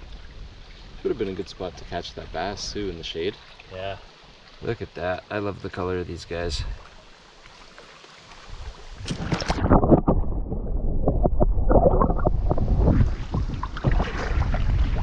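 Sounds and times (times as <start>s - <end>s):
wind buffeting microphone: 8.5s - 15.0s.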